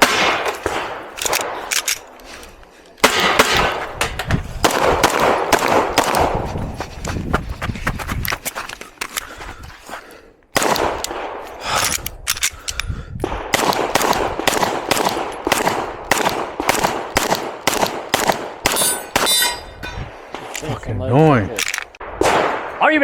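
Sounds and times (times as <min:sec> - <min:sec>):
pistol shots echoing: 0:00.0 - 0:01.8, 0:03.0 - 0:03.8, 0:04.6 - 0:06.4, 0:13.3 - 0:19.5, 0:22.0 - 0:22.8
short metallic ring: 0:18.8 - 0:20.0.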